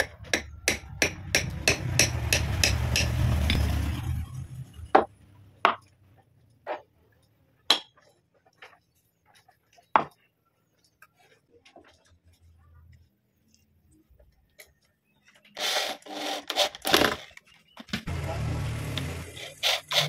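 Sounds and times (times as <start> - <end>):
power tool running: 18.1 - 20.0.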